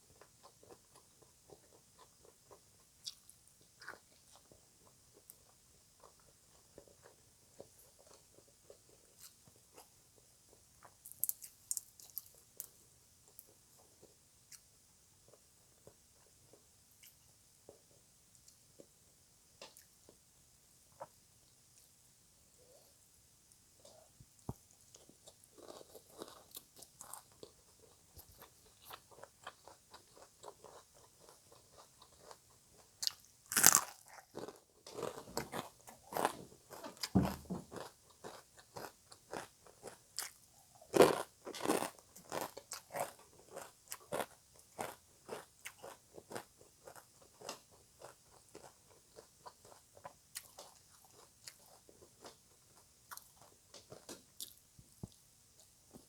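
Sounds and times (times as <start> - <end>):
chewing crunchy salad: 0.0 - 14.7, 23.8 - 56.0.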